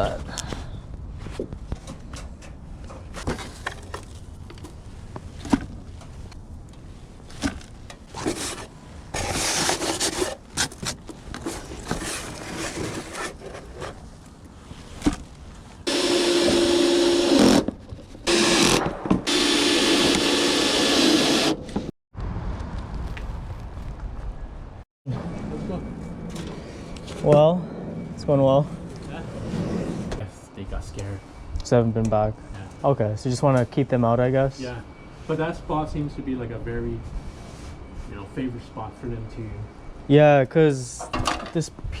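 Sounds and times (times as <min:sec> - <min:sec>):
scraping and rubbing handling noises: 0:01.1 - 0:15.8
small power tool humming and hissing: 0:15.9 - 0:17.5, 0:18.3 - 0:21.6.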